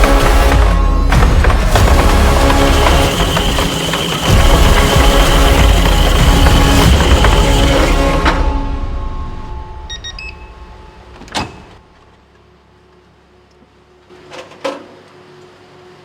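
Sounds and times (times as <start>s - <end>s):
washing machine running: 0.0s - 8.8s
short electronic beeps: 9.6s - 11.8s.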